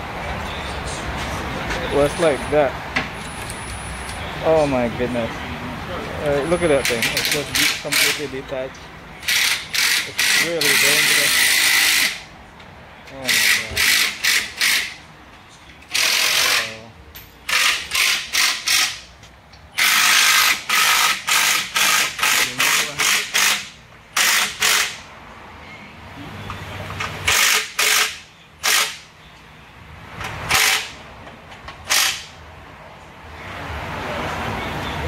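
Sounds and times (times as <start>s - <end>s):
pneumatic wrench bursts: 6.8s - 8.2s, 9.2s - 12.2s, 13.3s - 15.0s, 15.9s - 16.8s, 17.5s - 19.1s, 19.7s - 25.1s, 27.2s - 29.1s, 30.4s - 31.0s, 31.8s - 32.3s.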